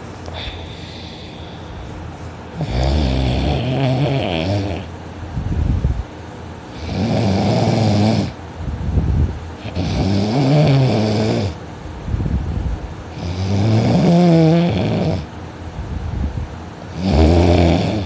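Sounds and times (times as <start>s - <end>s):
quiet breaths: 0.0s - 4.9s
person snoring heavily: 0.3s - 4.9s, 6.7s - 8.4s, 9.6s - 11.6s, 13.1s - 15.3s, 16.9s - 18.0s.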